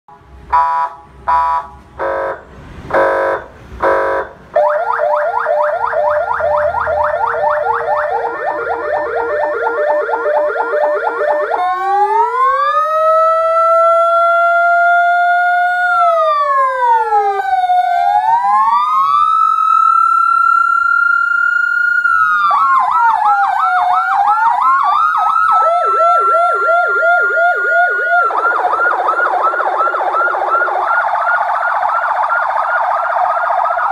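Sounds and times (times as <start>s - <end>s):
short horn blasts: 0.5s - 4.4s
electronic siren: 0.5s - 33.9s.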